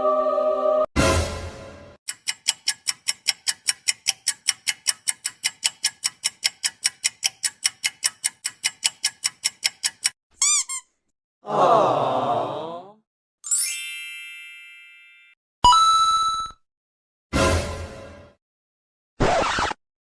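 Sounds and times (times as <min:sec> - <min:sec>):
sharp bright ticks: 0:02.1 - 0:10.2
high squeaky chirp: 0:10.4 - 0:11.0.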